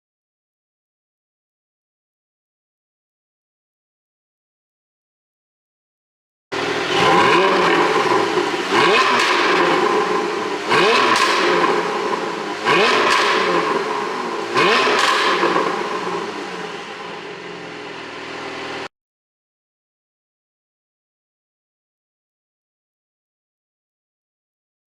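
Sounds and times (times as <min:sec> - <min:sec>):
car engine revving: 0:06.5 - 0:18.9
exhaust pops and crackles: 0:06.6 - 0:17.2.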